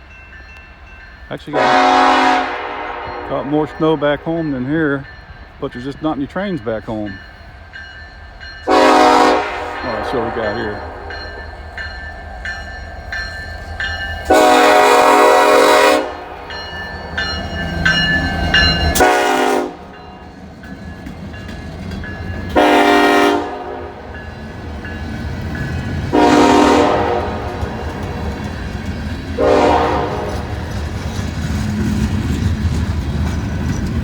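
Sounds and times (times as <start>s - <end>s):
crossing bell dinging: 0.0s - 31.0s
diesel locomotive rumble: 0.0s - 34.0s
locomotive air horn blasts: 1.5s - 3.8s, 8.7s - 11.1s, 14.3s - 16.4s, 18.9s - 20.0s, 22.6s - 24.2s, 26.1s - 28.2s, 29.4s - 30.6s.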